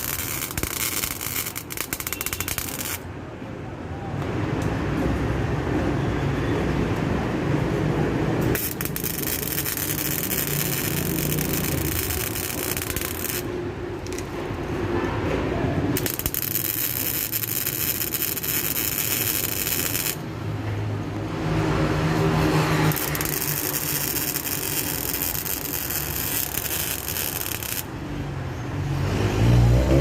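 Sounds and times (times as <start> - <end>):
welding arc crackling and hissing: 0.0 - 3.0, 8.4 - 14.2, 16.0 - 20.3, 21.8 - 27.9.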